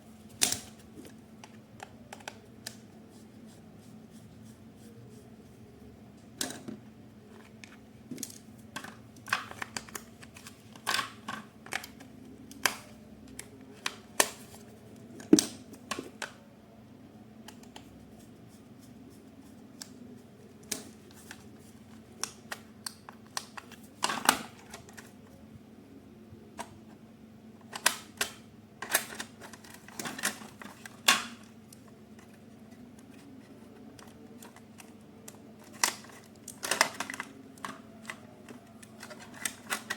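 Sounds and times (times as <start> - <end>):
faint steady hum: 0.0 - 39.9.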